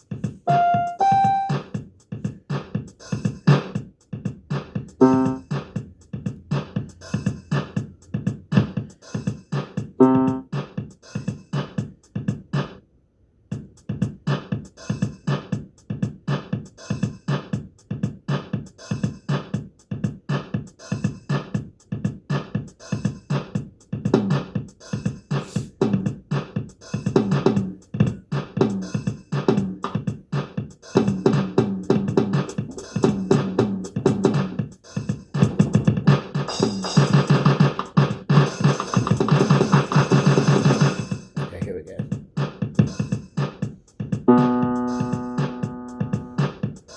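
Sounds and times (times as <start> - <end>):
drum machine beat: 0.0 - 12.8, 13.5 - 46.9
electronic keyboard chords: 0.5 - 1.7, 5.0 - 5.4, 10.0 - 10.5, 44.3 - 46.6.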